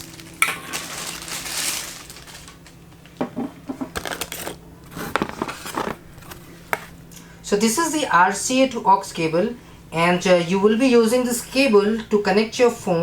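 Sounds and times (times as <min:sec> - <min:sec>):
plastic rustling: 0:00.0 - 0:03.2, 0:03.9 - 0:07.0.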